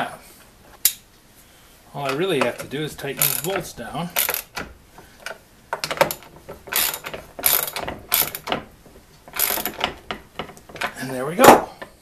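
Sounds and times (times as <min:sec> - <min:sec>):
ratchet wrench clicking: 0:03.2 - 0:03.6, 0:04.2 - 0:04.7, 0:05.8 - 0:08.6, 0:09.3 - 0:10.0.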